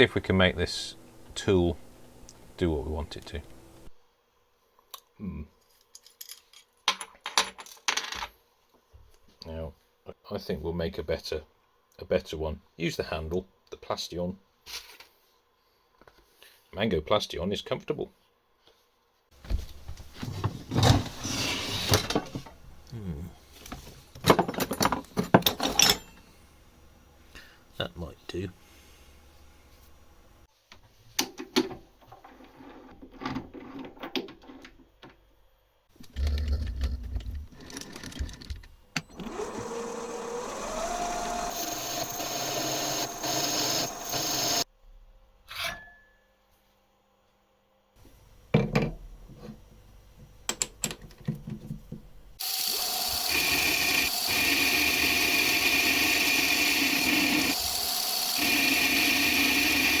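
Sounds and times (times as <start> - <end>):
power tool spinning up: 0.0 - 3.9, 39.1 - 44.6, 52.4 - 60.0
clicks and knocks of metal parts: 50.4 - 52.0.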